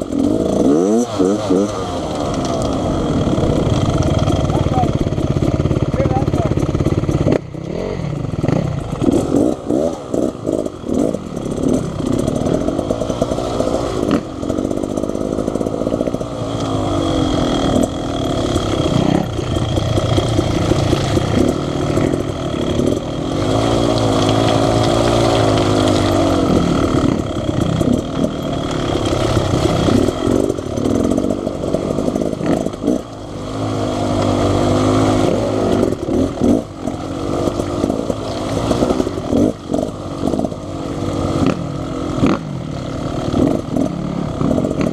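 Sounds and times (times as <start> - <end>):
dirt bike engine revving: 0.0 - 44.9.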